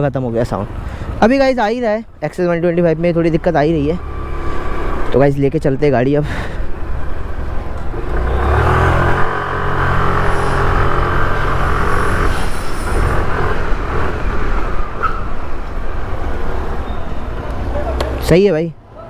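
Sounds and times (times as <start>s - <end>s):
scooter engine running: 6.8s - 15.4s.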